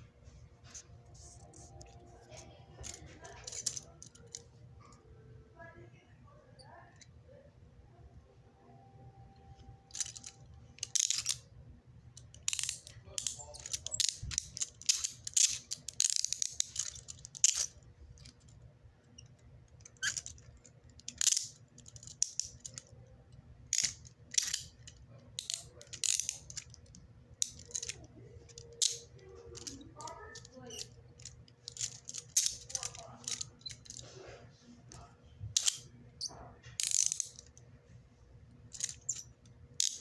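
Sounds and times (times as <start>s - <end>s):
handcuffs clinking: 2.3s - 4.4s, 9.9s - 11.4s, 12.2s - 18.5s, 19.3s - 22.9s, 23.7s - 34.0s, 35.6s - 37.6s, 38.7s - 40.0s
handcuff ratchet clicking: 2.8s - 4.4s, 9.9s - 11.4s, 12.2s - 18.4s, 19.8s - 22.9s, 23.7s - 29.8s, 30.6s - 34.0s, 35.6s - 35.8s, 36.8s - 37.5s, 38.7s - 40.0s.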